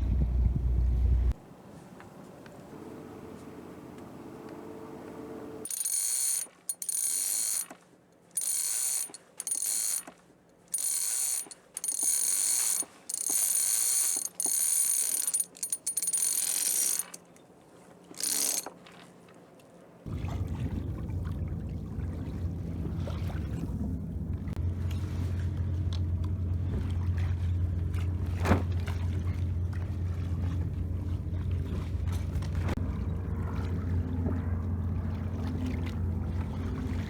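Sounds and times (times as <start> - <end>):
low hum: 0.0 - 1.4
small mechanism whirring: 5.6 - 7.8, 8.4 - 10.1, 10.7 - 17.3, 18.2 - 18.7.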